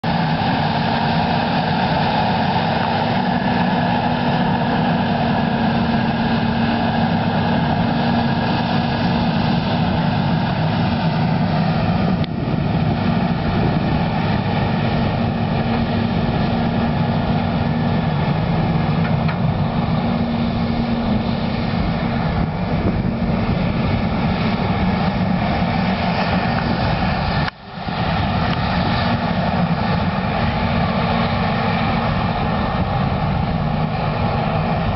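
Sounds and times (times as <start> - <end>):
tractor diesel engine under load: 0.0 - 34.9.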